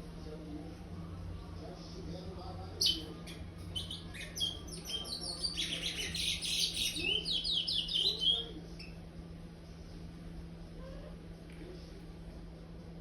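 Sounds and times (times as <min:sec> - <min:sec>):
finch singing high chattering notes: 0:02.8 - 0:09.0.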